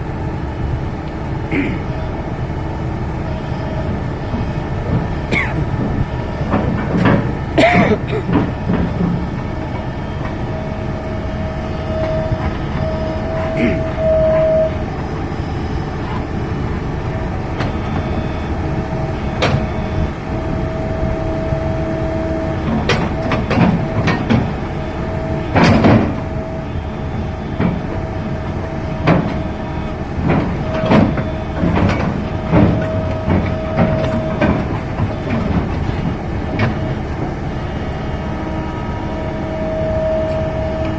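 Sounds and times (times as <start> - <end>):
diesel machinery rumbling: 0.0 - 40.9
metallic knocks and clanks: 4.3 - 10.6, 22.6 - 24.6, 29.0 - 37.2
thin whining tone: 8.8 - 40.9.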